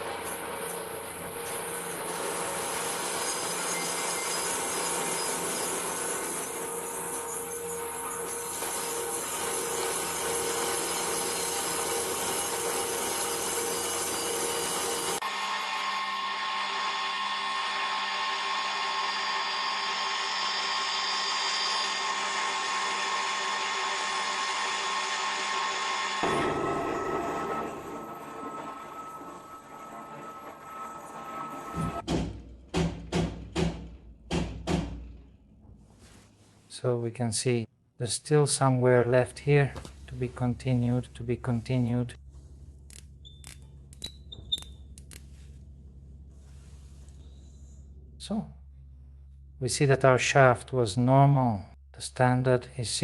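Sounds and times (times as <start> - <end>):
grinding wheel on steel: 0.0 - 32.0.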